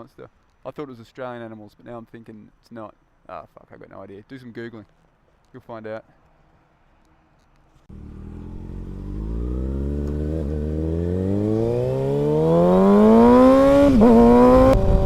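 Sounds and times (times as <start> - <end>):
motorcycle engine accelerating: 7.9 - 15.0.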